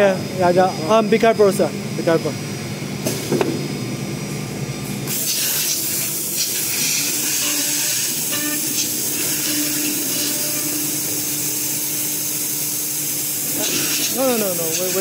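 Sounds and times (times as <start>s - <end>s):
router machine hissing: 5.1s - 15.0s.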